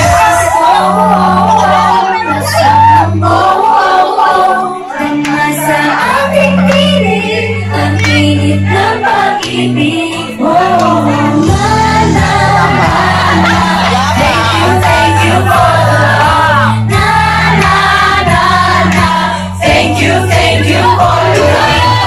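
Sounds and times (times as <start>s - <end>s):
woman singing: 0.0s - 22.0s.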